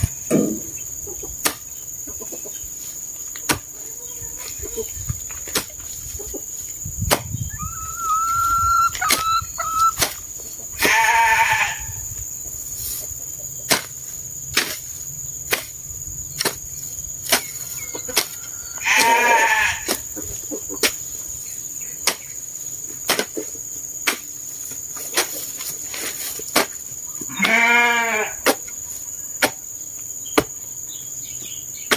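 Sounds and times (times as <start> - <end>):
sheep bleating: 10.8 - 11.8, 18.8 - 19.8, 27.3 - 28.4.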